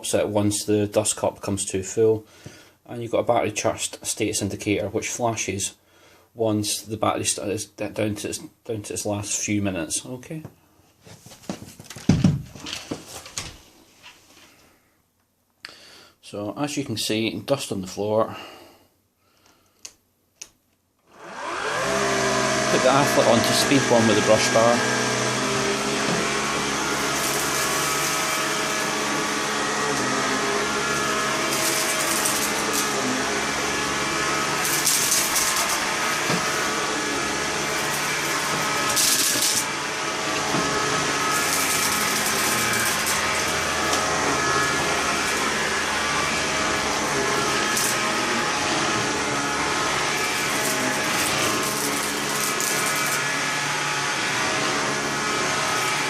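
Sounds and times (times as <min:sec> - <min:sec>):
vacuum cleaner motor whine: 0:21.1 - 0:56.0.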